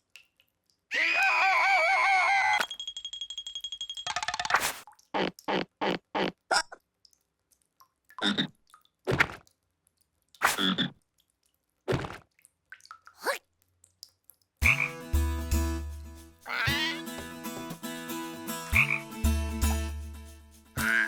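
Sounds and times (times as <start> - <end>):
cartoon croaks: 8.2 - 8.6, 10.5 - 11.0, 16.5 - 17.0, 20.8 - 21.0.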